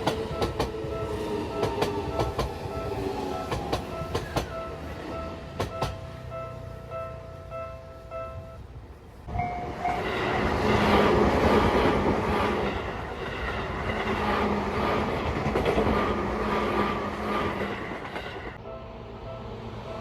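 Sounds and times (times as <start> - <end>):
level crossing warning bell: 0.0 - 14.6, 18.4 - 20.0
train wheels clattering over rail joints: 9.9 - 18.6.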